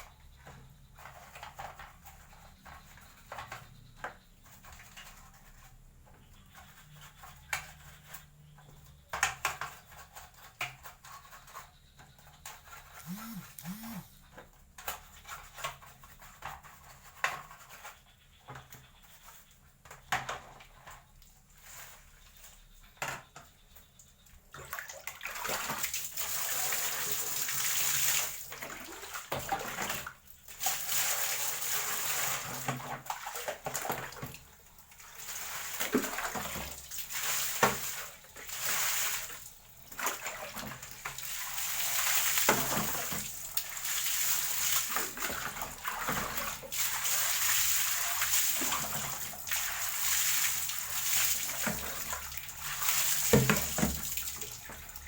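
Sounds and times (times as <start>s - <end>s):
water running and splashing: 24.6s - 55.0s.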